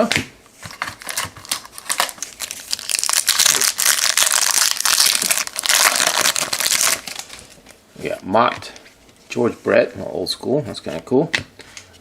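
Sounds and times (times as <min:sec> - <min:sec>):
foil wrapper tearing and crinkling: 0:00.9 - 0:07.6.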